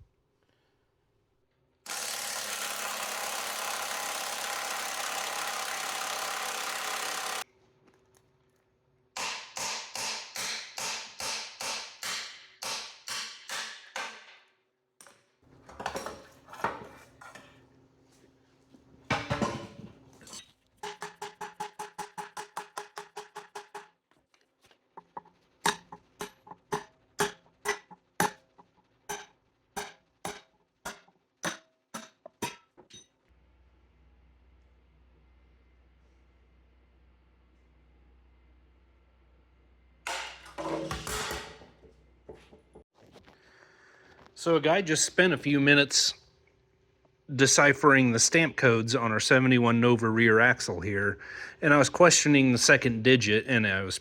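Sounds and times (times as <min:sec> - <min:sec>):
hammer strikes on metal: 0:09.2 - 0:14.4, 0:20.8 - 0:23.9, 0:25.7 - 0:28.4, 0:29.1 - 0:33.0.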